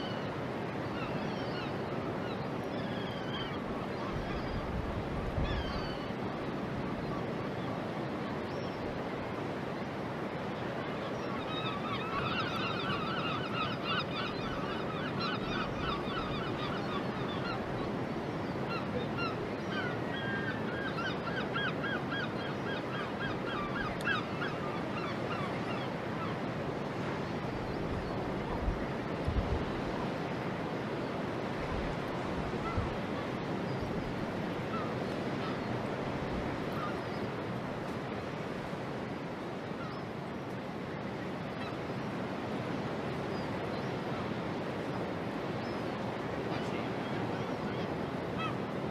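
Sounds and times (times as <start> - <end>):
wind: 0.0 - 48.9.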